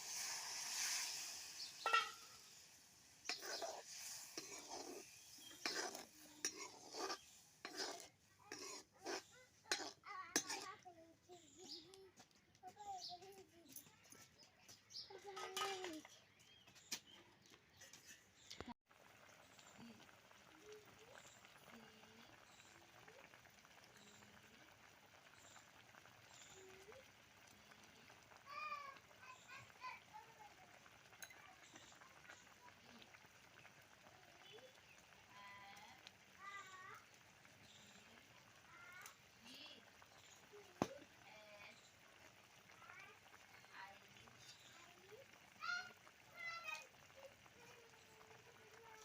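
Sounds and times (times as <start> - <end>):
metal spoon scraping a pot: 0.0 - 10.8.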